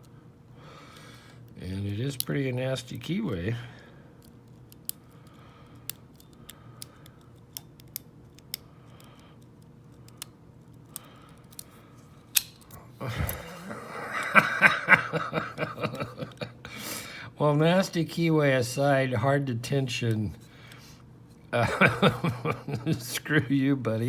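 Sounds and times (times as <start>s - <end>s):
lock pick clicking and scratching: 4.2s - 12.8s.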